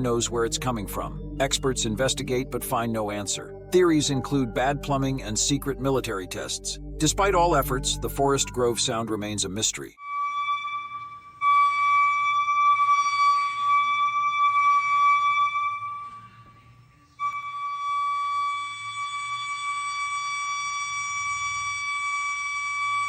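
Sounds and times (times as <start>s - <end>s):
loud high-pitched whistling tone: 10.0s - 23.0s.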